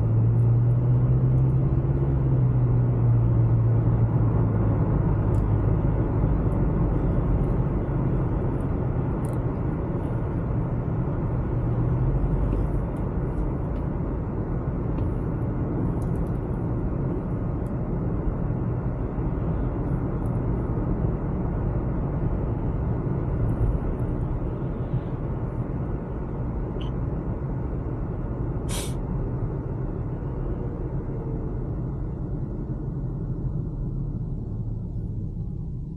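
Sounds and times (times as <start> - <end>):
engine hum: 0.0 - 35.9
vehicle rumble: 0.0 - 35.9
short sharp hiss: 28.7 - 29.0.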